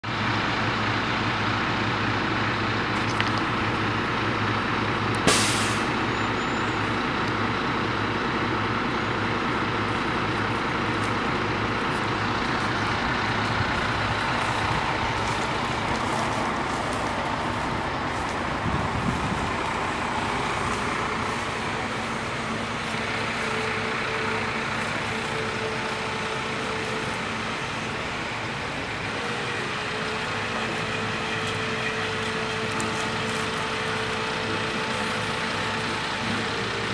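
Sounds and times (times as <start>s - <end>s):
diesel engine running: 0.0s - 36.9s
air hiss: 5.3s - 6.0s.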